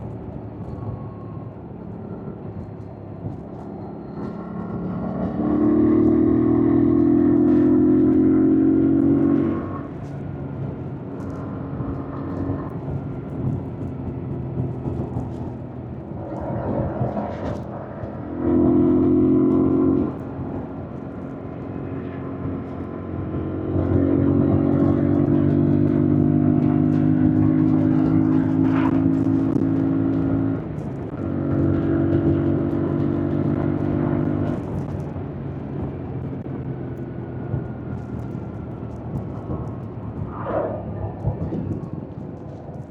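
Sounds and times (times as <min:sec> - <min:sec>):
motorcycle engine revving: 0:21.7 - 0:35.0.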